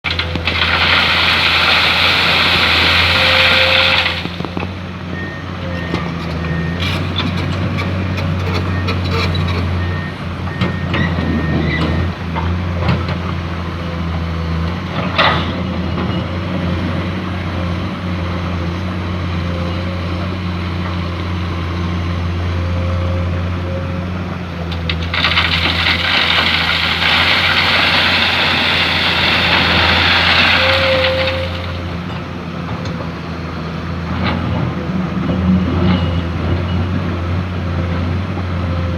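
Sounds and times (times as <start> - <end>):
excavator diesel engine running: 0.1 - 38.9
loud hiss: 0.8 - 4.6, 25.1 - 32.1.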